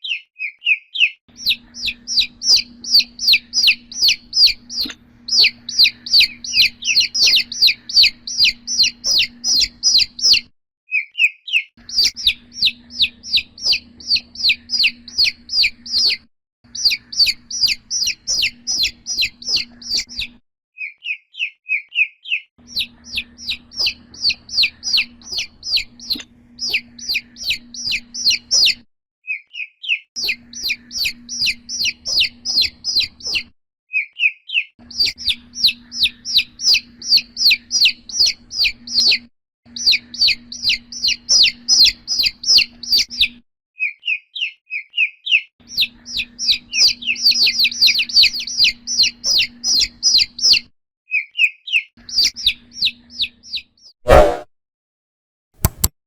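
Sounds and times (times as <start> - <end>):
chick peeping loudly: 0.0 - 54.4
chick soft low twitter: 54.1 - 54.5.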